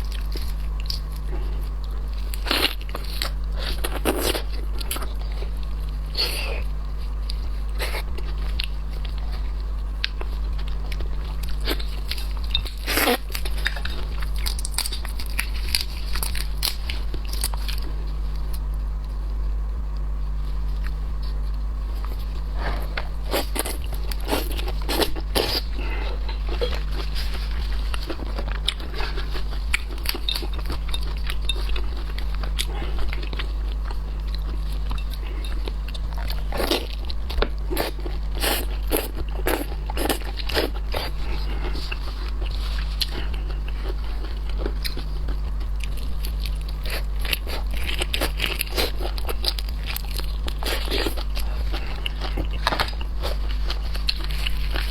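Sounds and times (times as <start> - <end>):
chewing: 0.0 - 54.9
steady low hum: 0.0 - 54.9
shrimp shells crunching: 45.8 - 54.9.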